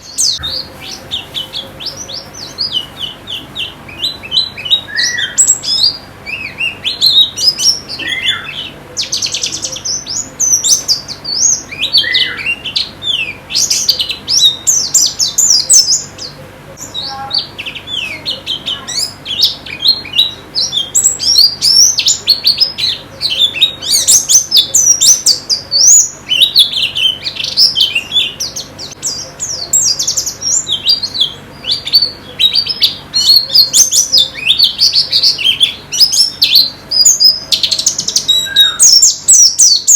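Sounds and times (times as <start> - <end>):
birds twittering chirps: 0.0 - 39.9.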